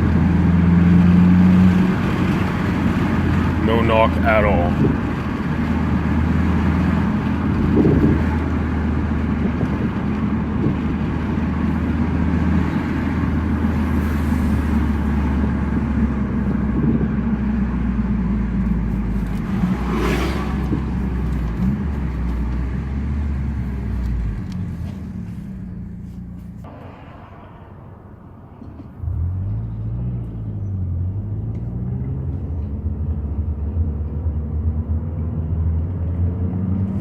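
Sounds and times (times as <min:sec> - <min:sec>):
car engine running: 0:00.0 - 0:26.9
tyre and road noise: 0:00.0 - 0:37.0.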